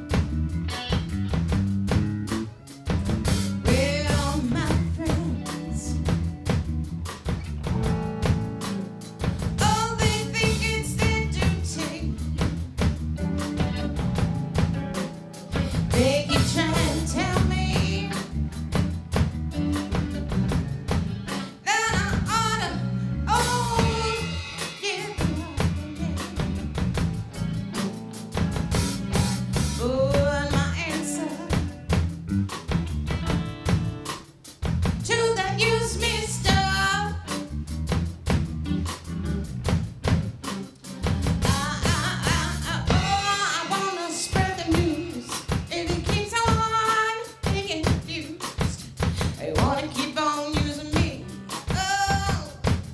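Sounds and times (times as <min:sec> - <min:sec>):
low bass line: 0:00.0 - 0:08.6, 0:09.2 - 0:15.0, 0:15.6 - 0:24.6, 0:25.2 - 0:30.9, 0:31.5 - 0:34.1, 0:34.7 - 0:40.4, 0:41.1 - 0:43.3
drum kit: 0:00.0 - 0:52.9
person singing: 0:03.6 - 0:06.1, 0:09.6 - 0:12.3, 0:15.5 - 0:18.4, 0:21.3 - 0:26.8, 0:29.8 - 0:32.0, 0:41.4 - 0:52.8.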